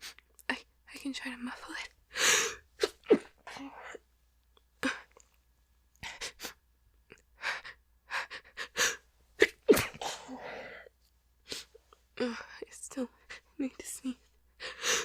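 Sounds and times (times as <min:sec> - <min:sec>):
woman sneezing: 0:09.4 - 0:10.8.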